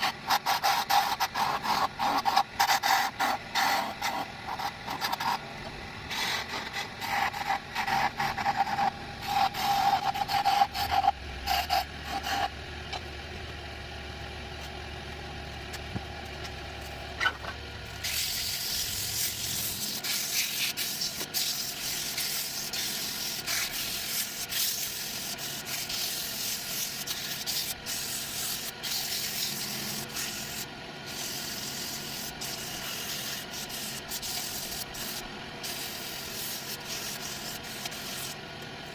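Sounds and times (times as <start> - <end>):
sanding hiss: 6.1 - 12.5, 18.0 - 38.4.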